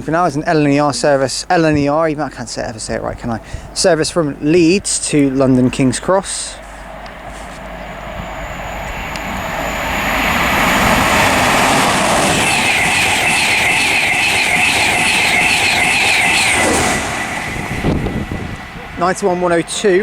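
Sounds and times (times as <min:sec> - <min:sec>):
high ringing from train wheels: 0:00.0 - 0:20.0
train passing at speed: 0:00.0 - 0:20.0.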